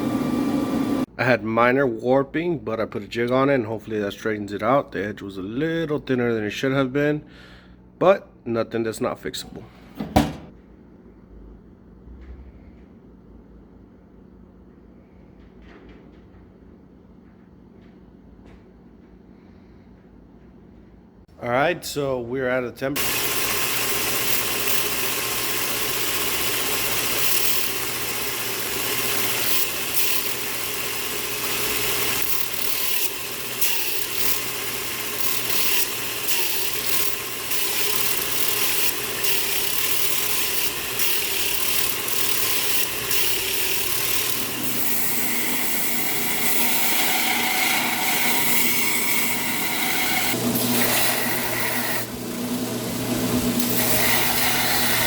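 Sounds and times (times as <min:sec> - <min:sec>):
shop machinery running: 0:00.0 - 0:01.1, 0:22.9 - 0:55.0
steady whine: 0:00.0 - 0:01.1.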